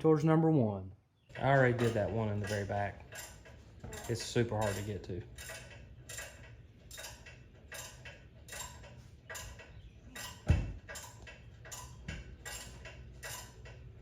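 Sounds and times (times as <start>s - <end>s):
dull thump: 10.4s - 11.0s.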